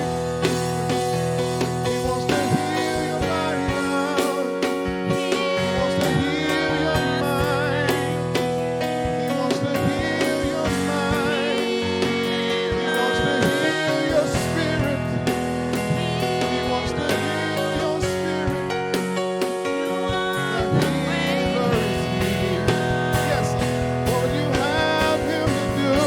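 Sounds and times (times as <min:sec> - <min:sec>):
person singing with vibrato: 0:00.0 - 0:26.0
sustained chords and guitar: 0:00.0 - 0:26.0.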